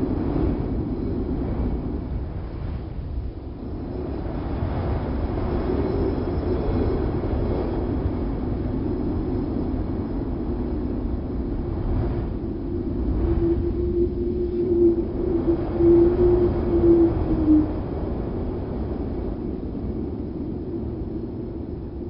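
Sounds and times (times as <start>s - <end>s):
low rumbling wind rush: 0.0s - 22.0s
faint whistle-like tone: 13.1s - 17.8s.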